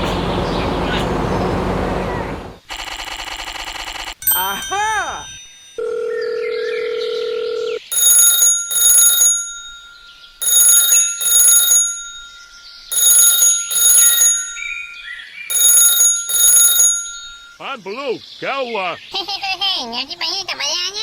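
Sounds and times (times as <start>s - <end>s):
bell ringing in short pairs: 4.2s - 6.3s, 7.9s - 17.7s.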